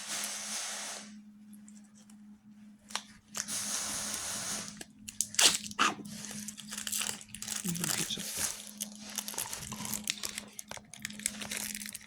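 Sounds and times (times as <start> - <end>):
plastic wrapper tearing: 4.7 - 12.0
plastic wrapper crackling: 5.1 - 12.0.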